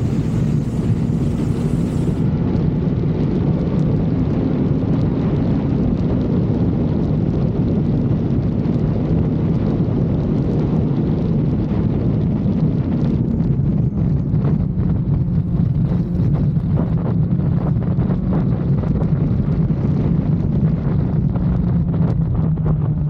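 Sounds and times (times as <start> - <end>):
motorcycle engine cruising: 0.0 - 2.8, 13.2 - 19.2
wind on microphone: 0.0 - 23.0.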